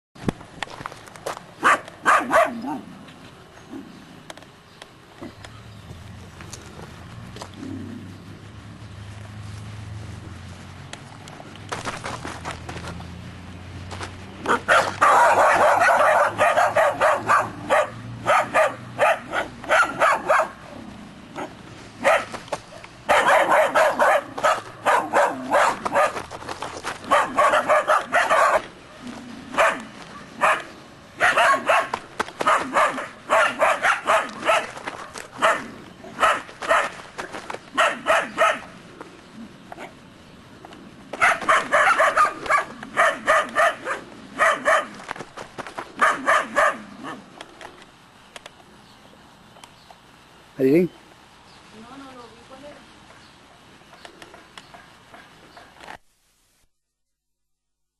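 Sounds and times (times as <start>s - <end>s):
puppies barking: 1.6s - 3.0s, 14.4s - 37.1s, 37.7s - 38.8s, 41.1s - 45.1s, 46.0s - 47.3s.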